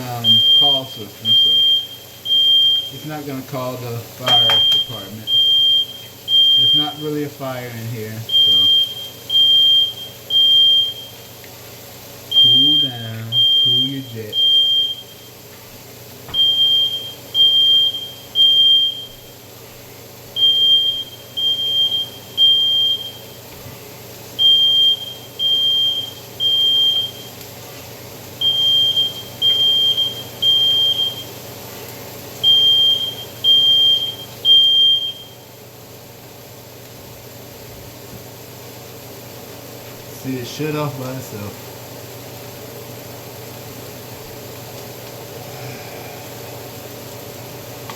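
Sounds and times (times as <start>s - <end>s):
smoke alarm beeping: 0.0s - 7.4s, 8.2s - 11.4s, 12.3s - 15.4s, 16.3s - 19.5s, 20.3s - 23.5s, 24.4s - 27.5s, 28.4s - 31.5s, 32.4s - 35.5s.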